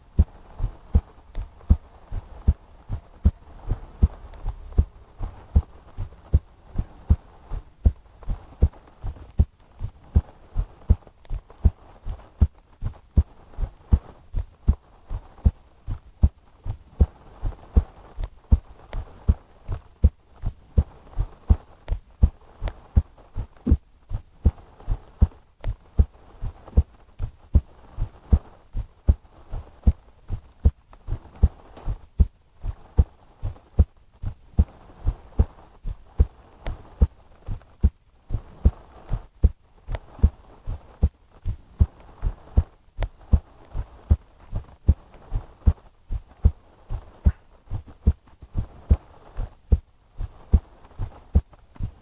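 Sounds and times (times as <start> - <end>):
heartbeat: 0.0 - 52.0.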